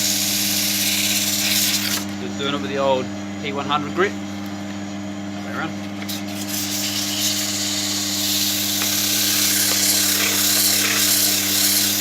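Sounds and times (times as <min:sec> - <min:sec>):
sandpaper hissing on spinning wood: 0:00.0 - 0:02.1, 0:06.1 - 0:12.0
lathe and dust fan hum: 0:00.0 - 0:12.0.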